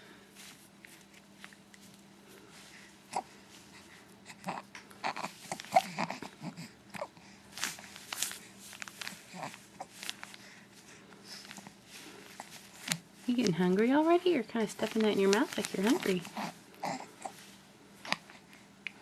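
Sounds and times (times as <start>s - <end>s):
baby grunting and squeaking: 4.3s - 7.1s, 16.3s - 17.4s.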